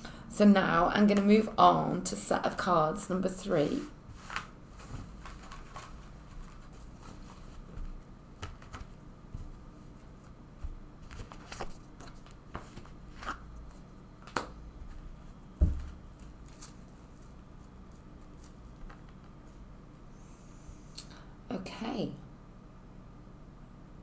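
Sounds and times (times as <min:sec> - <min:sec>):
cards tapping and rustling: 0:04.1 - 0:19.6
heavier thump: 0:15.6 - 0:16.0.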